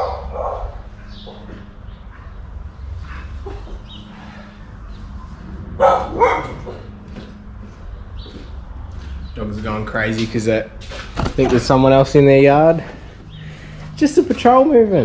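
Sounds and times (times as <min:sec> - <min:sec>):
dogs barking: 0:00.0 - 0:05.0, 0:05.6 - 0:07.3.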